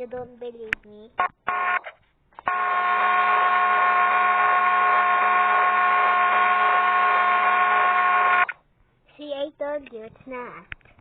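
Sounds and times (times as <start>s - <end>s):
ceiling fan whirring: 1.2s - 9.0s.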